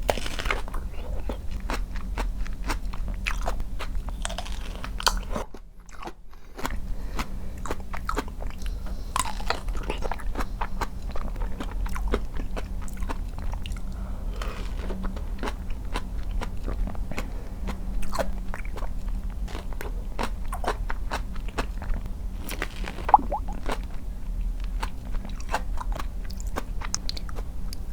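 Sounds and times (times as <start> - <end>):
crunchy bites of fruit: 0.0 - 5.4
wet chewing: 21.5 - 23.8.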